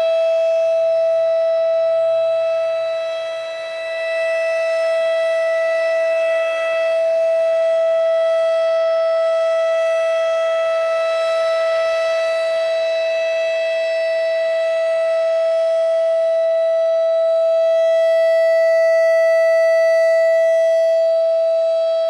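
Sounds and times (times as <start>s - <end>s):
warning siren steady high tone: 0.0s - 22.0s.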